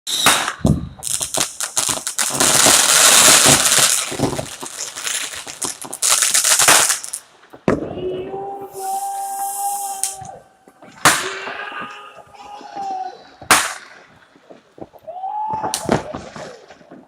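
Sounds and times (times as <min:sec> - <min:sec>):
fireworks crackling: 0:00.1 - 0:07.9, 0:08.8 - 0:17.0
loud firework bangs: 0:00.1 - 0:08.0, 0:08.8 - 0:12.0, 0:12.6 - 0:17.0.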